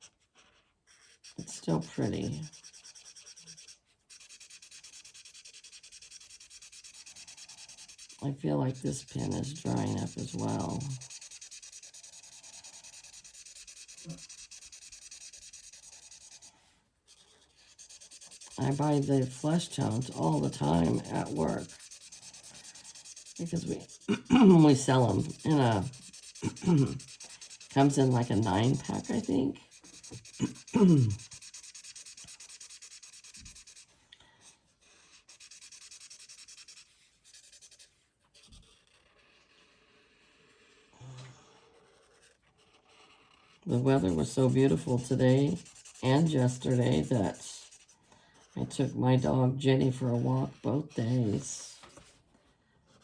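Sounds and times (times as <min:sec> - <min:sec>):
marker scratching on paper: 0:00.0 - 0:33.9, 0:34.8 - 0:40.9, 0:41.5 - 0:52.2
person's voice: 0:01.4 - 0:02.5, 0:08.2 - 0:11.0, 0:18.6 - 0:21.8, 0:23.4 - 0:27.0, 0:27.7 - 0:29.6, 0:43.7 - 0:47.7, 0:48.6 - 0:51.9.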